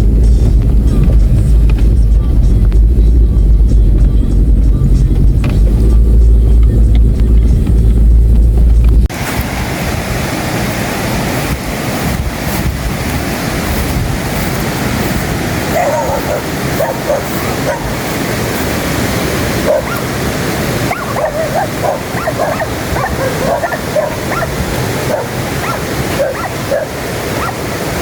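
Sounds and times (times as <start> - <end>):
steady rushing noise: 0.0 - 28.0
dog whimpering and yelping: 20.9 - 24.5, 25.1 - 27.6.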